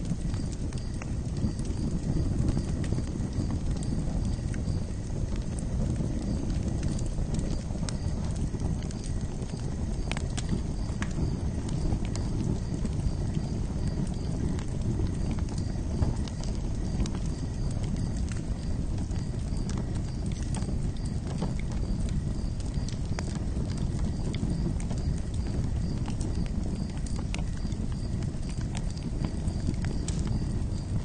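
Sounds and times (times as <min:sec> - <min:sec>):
campfire crackling and popping: 0:00.0 - 0:31.0.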